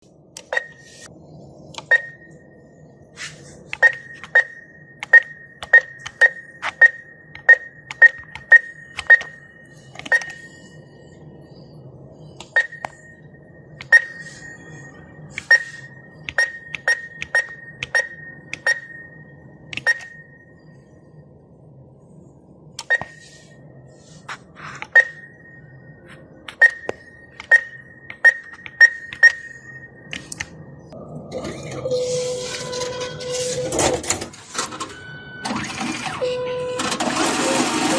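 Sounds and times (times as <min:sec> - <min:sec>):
short keypad beeps: 0:00.5 - 0:00.8, 0:03.8 - 0:10.6, 0:12.5 - 0:13.2, 0:13.8 - 0:14.5, 0:15.4 - 0:19.2, 0:19.8 - 0:20.3, 0:24.9 - 0:25.3, 0:26.6 - 0:30.4
keypad button clicks: 0:26.5 - 0:29.4.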